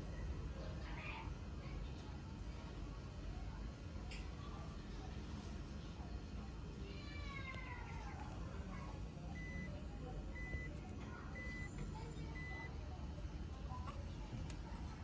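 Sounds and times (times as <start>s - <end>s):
short high beeps: 9.4s - 9.7s, 10.4s - 10.7s, 11.4s - 11.7s, 12.4s - 12.7s.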